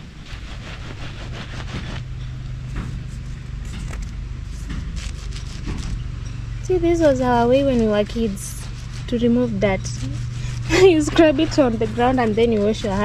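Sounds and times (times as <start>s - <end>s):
scraping and rustling: 0.0s - 6.0s
vehicle engine humming: 0.0s - 13.0s.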